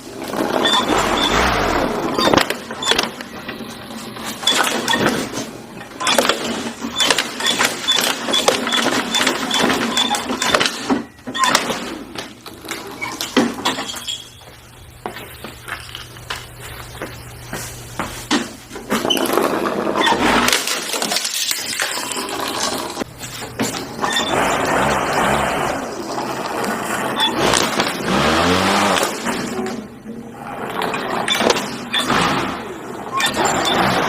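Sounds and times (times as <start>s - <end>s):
lawnmower smashing plastic toy: 19.3s - 22.8s, 23.9s - 29.6s.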